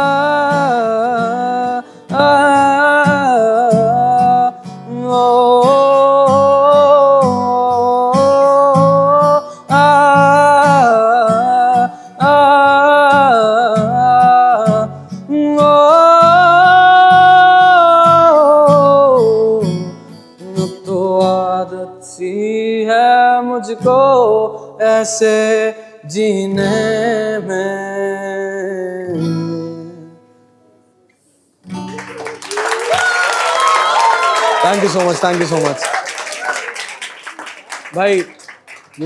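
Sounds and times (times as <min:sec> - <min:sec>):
man singing wordless notes: 0:00.0 - 0:30.2
acoustic guitar: 0:00.0 - 0:36.0.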